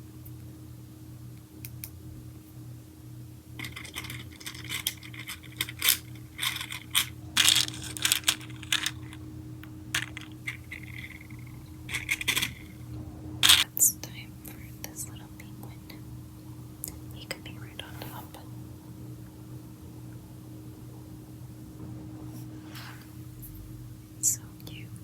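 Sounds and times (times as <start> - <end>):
plastic charms clicking: 3.6 - 9.2, 9.9 - 13.7.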